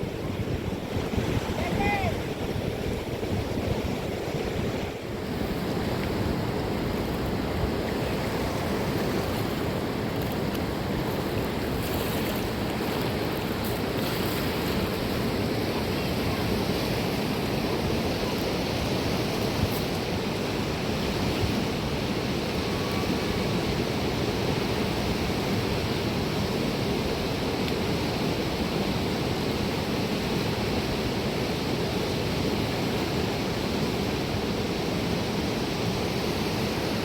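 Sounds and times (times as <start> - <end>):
wind buffeting microphone: 0.0 - 26.4
rain and water rushing: 0.0 - 37.0.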